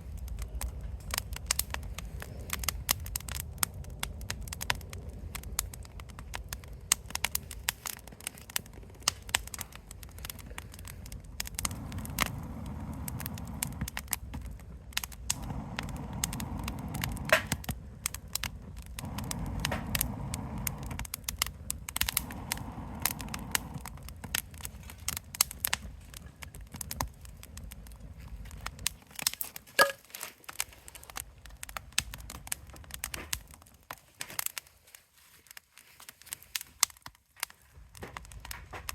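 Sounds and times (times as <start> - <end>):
low rumble: 0.0 - 28.9
burning wood popping: 0.0 - 38.9
campfire crackling: 0.0 - 38.9.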